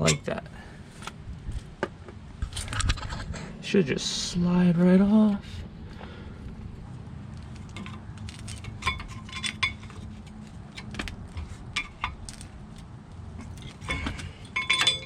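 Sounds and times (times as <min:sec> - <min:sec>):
metal clinking and scraping: 0:07.4 - 0:15.0
short ringing metal clinks: 0:13.9 - 0:15.0.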